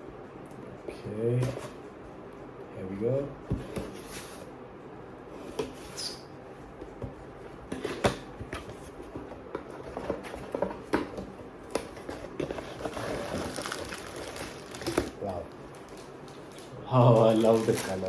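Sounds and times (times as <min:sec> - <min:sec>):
packaging rustling and clicking: 0:11.7 - 0:18.0.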